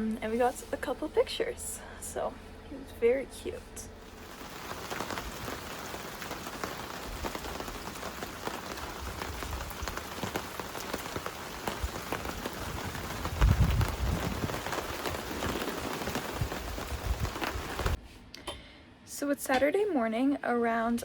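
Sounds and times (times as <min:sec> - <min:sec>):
rain drops ticking on hard surface: 0:04.0 - 0:18.0.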